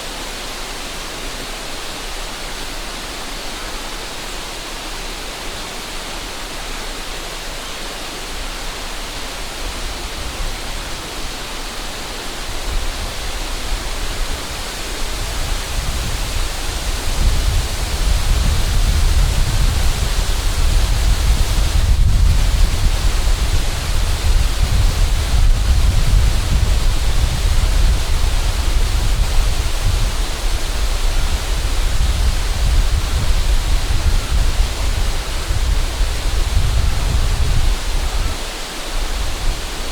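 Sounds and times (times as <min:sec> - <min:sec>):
river rushing: 0:00.0 - 0:39.9
wind buffeting microphone: 0:09.4 - 0:39.9.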